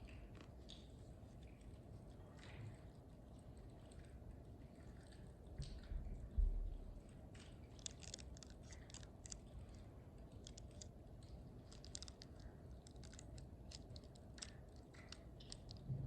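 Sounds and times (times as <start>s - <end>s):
clicks and crackles of bread eaten: 0.0s - 3.1s, 3.8s - 16.0s.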